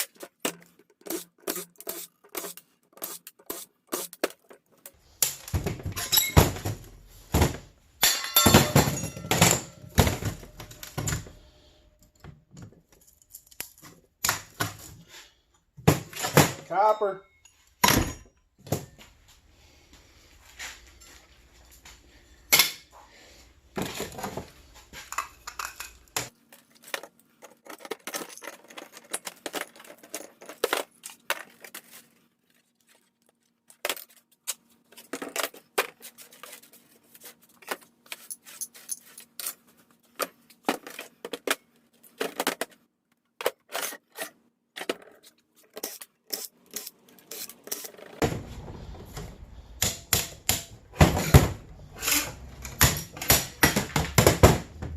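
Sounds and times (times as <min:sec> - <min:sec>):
scrap metal clinking: 0:05.8 - 0:06.7, 0:08.0 - 0:11.5.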